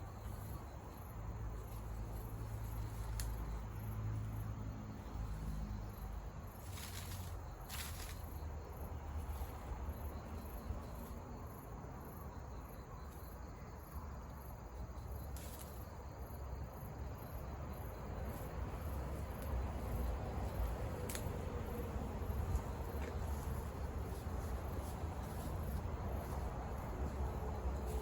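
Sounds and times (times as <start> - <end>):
low outdoor rumble: 16.8 - 28.0.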